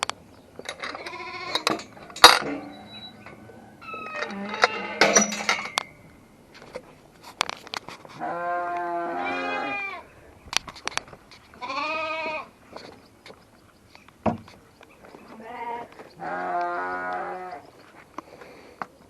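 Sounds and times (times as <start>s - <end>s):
livestock bleating: 1.0s - 1.6s, 8.2s - 10.1s, 11.6s - 12.6s, 15.4s - 17.7s.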